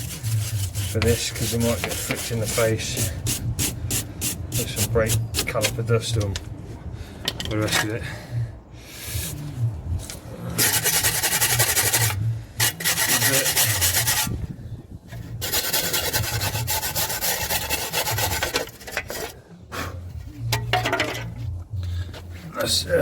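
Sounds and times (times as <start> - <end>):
wire brush scrubbing metal: 0.0 - 5.6, 10.6 - 14.4, 15.2 - 19.4.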